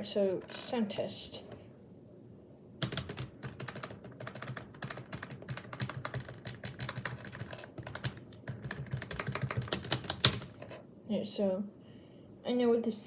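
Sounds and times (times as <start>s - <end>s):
membrane keyboard typing: 2.8s - 10.8s.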